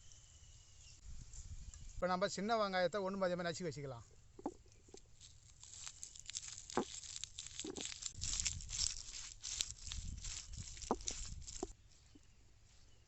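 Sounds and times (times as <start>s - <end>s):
onion skins crackling: 4.9s - 11.7s.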